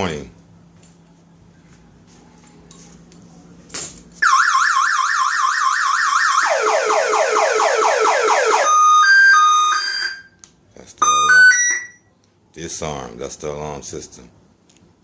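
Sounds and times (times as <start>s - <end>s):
motorcycle alarm siren: 4.2s - 10.4s, 11.0s - 12.1s.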